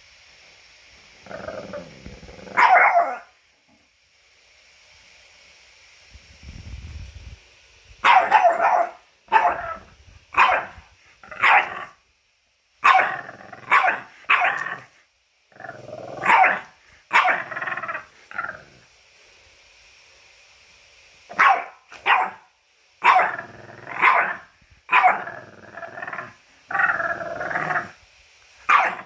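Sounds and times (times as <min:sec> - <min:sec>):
faint low rumble: 0:01.0 - 0:03.0
dog barking whines: 0:02.5 - 0:03.4, 0:08.0 - 0:12.0, 0:12.8 - 0:14.9, 0:16.1 - 0:18.6, 0:21.3 - 0:25.4, 0:28.7 - 0:29.0.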